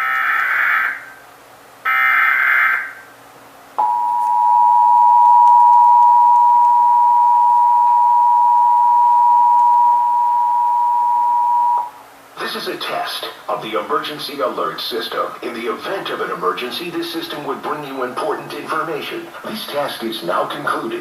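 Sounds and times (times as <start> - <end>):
two-tone attention signal: 3.8 - 11.9.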